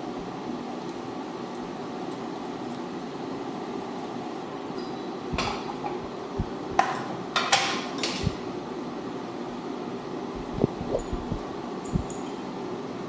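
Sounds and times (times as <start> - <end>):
steady low hum: 0.0 - 13.0
sharp metallic clinks and knocks: 11.0 - 12.5.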